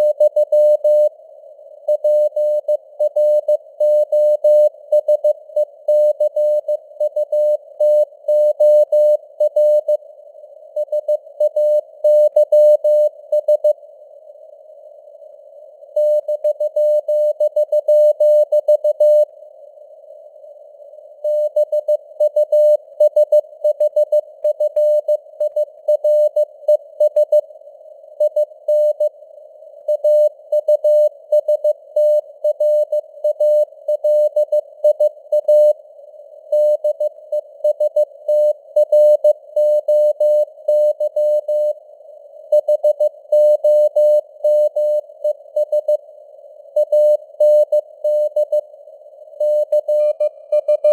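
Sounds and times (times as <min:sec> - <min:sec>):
morse code beeps: 0:49.4 - 0:50.9.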